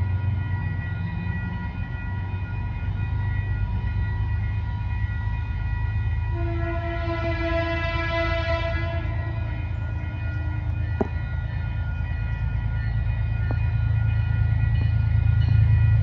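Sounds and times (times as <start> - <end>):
train rumbling by: 0.0 - 16.0
train horn: 6.2 - 11.1.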